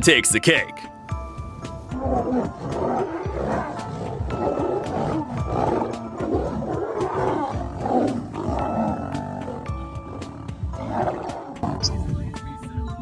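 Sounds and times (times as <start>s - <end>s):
lions calling: 1.3s - 12.4s.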